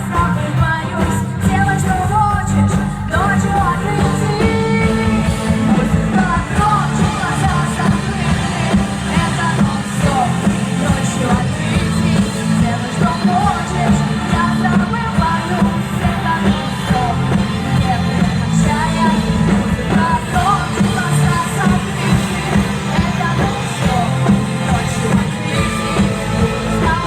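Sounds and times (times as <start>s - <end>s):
band playing a song: 0.0s - 27.0s
person singing: 0.0s - 27.0s.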